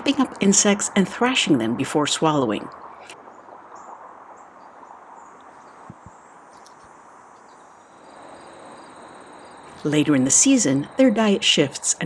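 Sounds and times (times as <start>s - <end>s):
background hiss: 0.0s - 12.0s
high insect trill: 2.7s - 12.0s.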